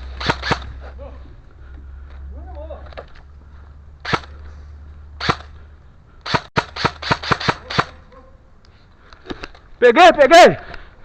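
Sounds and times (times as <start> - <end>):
airsoft gun shots: 0.1 - 0.8, 4.0 - 4.4, 5.2 - 5.5, 6.2 - 8.0.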